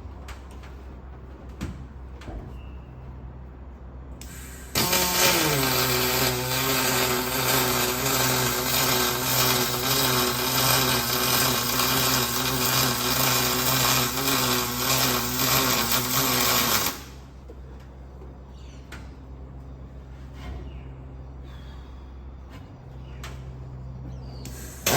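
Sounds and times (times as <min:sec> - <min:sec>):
welding arc buzzing and crackling: 0:04.2 - 0:17.4, 0:24.5 - 0:24.9.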